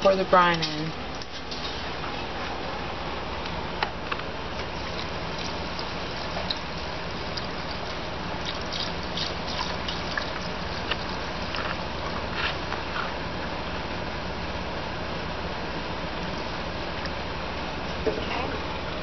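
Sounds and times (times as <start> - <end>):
small splashes and drips: 4.6 - 12.1
liquid pouring into a jar: 4.6 - 12.2.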